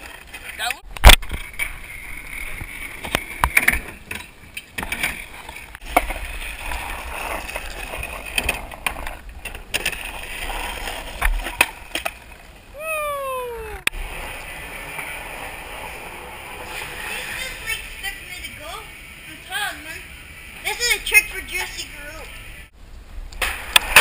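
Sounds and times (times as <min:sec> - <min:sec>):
skateboard wheels rolling on concrete: 0:00.0 - 0:24.0
skateboard clacks: 0:03.0 - 0:12.4
falling pitched tone: 0:12.7 - 0:13.9.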